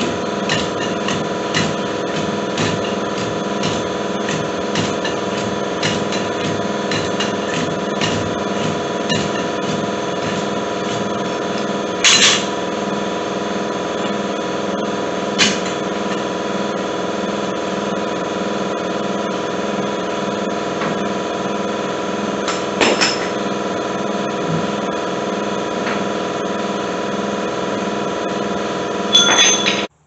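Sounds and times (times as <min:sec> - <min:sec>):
metal-on-metal tool knocks: 0:00.0 - 0:11.1
droning hum: 0:00.0 - 0:30.0.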